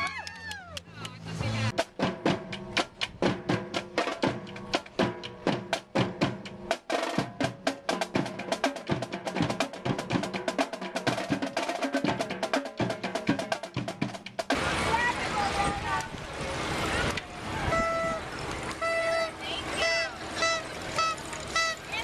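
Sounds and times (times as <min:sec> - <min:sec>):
snare and bass drums: 0:01.4 - 0:16.2
held pitched notes: 0:17.6 - 0:22.0.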